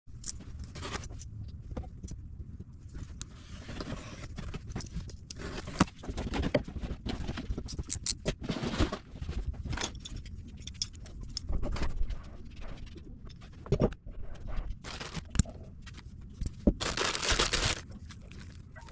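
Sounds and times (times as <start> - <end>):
packaging rustling and scraping: 2.9 - 10.5, 11.5 - 18.9.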